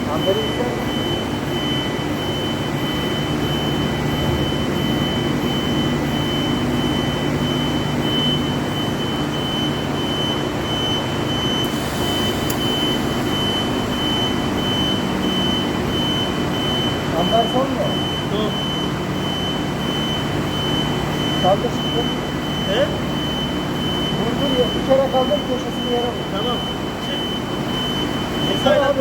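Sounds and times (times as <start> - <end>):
high whine: 11.6 - 17.7
welding equipment hissing: 11.7 - 13.0.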